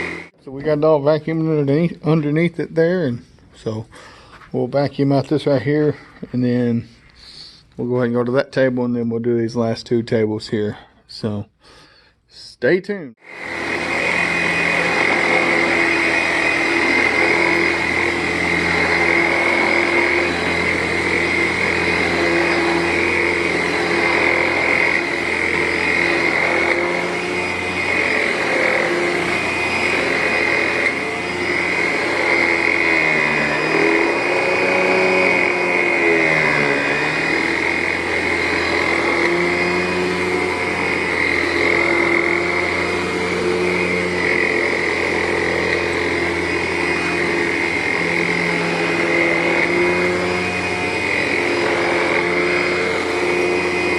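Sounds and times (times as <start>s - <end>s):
vacuum cleaner running on carpet: 0.0s - 1.9s, 13.2s - 53.9s.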